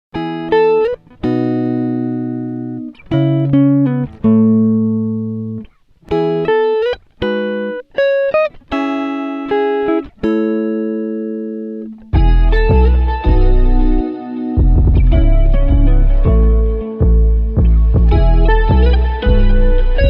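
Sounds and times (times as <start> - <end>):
plucked guitar melody: 0.1 - 20.0
deep bass: 12.2 - 14.0, 14.6 - 20.0.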